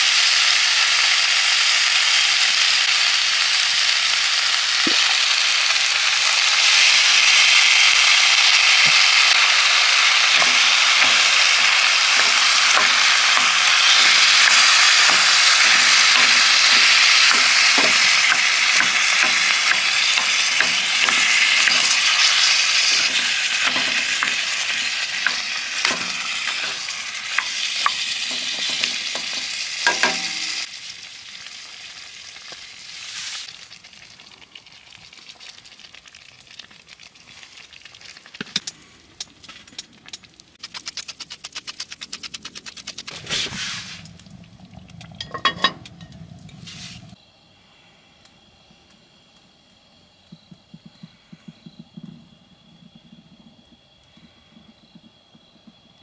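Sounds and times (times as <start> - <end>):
food sizzling in a pan: 0.0 - 38.6, 45.1 - 47.2
utensil clicking against pan: 9.4 - 30.6.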